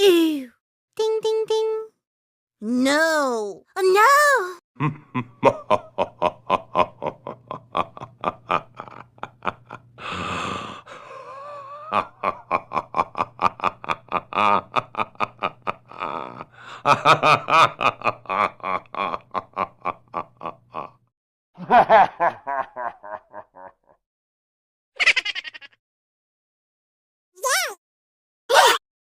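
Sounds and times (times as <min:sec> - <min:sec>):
person laughing: 0:04.8 - 0:21.0
person breathing: 0:10.0 - 0:11.8, 0:16.5 - 0:16.9.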